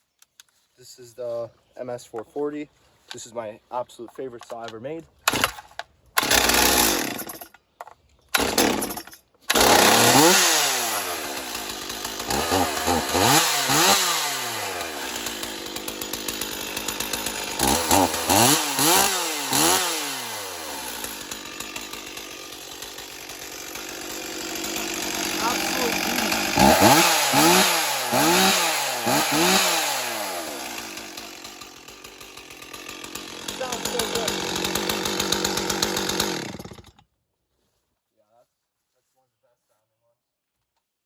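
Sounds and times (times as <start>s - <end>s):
chainsaw starting and revving: 5.2s - 7.5s, 8.3s - 37.1s.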